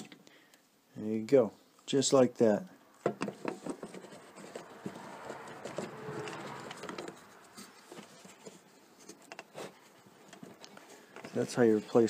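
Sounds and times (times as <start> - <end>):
hands handling plastic parts: 2.9 - 12.0.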